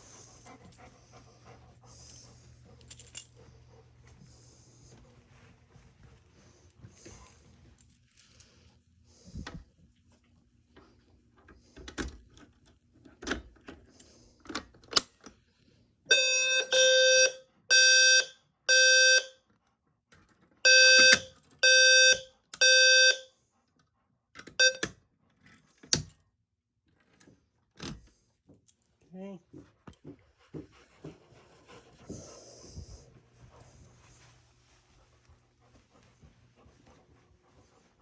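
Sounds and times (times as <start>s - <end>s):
fire alarm horn buzzing blasts: 16.1s - 19.4s, 20.6s - 23.3s, 24.6s - 24.9s
alarm pull station clicks and knocks: 20.8s - 21.3s.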